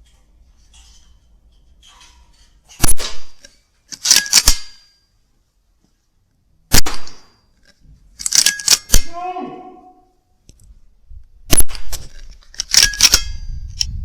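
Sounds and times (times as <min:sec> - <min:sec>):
metallic clacks of rifle lever: 0:00.0 - 0:05.0, 0:07.1 - 0:09.1, 0:11.7 - 0:14.0
air rifle shot: 0:02.8 - 0:03.4, 0:06.7 - 0:07.4, 0:11.5 - 0:12.1.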